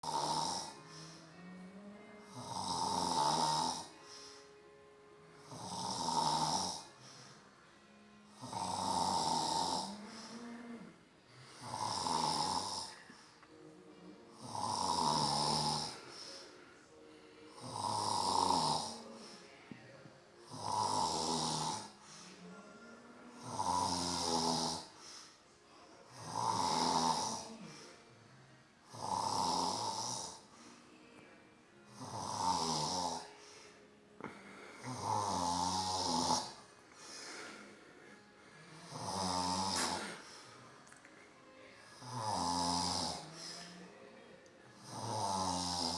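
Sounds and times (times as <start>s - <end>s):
man snoring: 0.0s - 1.6s, 2.2s - 4.5s, 5.4s - 7.3s, 8.3s - 13.4s, 14.3s - 16.6s, 17.5s - 19.4s, 20.4s - 22.0s, 23.3s - 25.0s, 26.0s - 28.0s, 28.9s - 30.5s, 31.9s - 33.4s, 34.2s - 37.8s, 38.7s - 40.5s, 42.0s - 43.8s, 44.8s - 45.9s.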